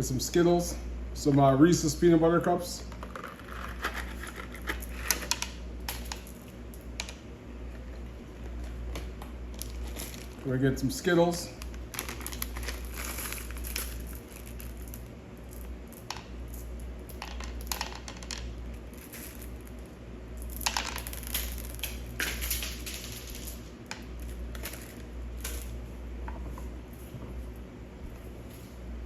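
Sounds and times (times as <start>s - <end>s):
low steady hum: 0.0s - 29.0s
candy clicking and rustling: 2.9s - 10.5s, 11.2s - 25.8s.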